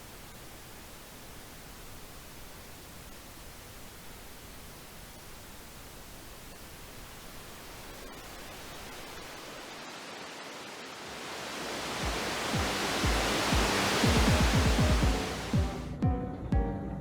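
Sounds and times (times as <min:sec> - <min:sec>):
static hiss: 0:00.0 - 0:16.0
deep electronic drum hits: 0:12.0 - 0:15.9.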